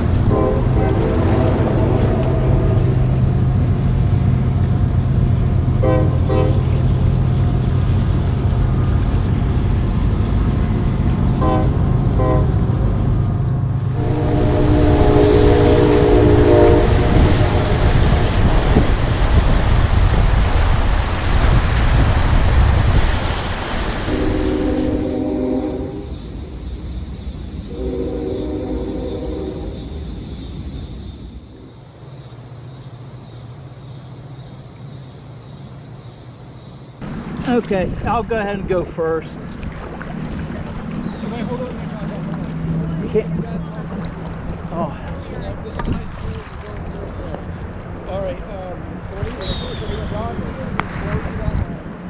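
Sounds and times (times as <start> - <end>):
train horn: 0.0 - 3.4, 5.8 - 6.8, 11.4 - 12.7, 13.8 - 19.2, 24.1 - 26.3, 27.7 - 30.1
train passing with low rumble: 0.0 - 52.0
loud rushing noise: 13.1 - 32.0.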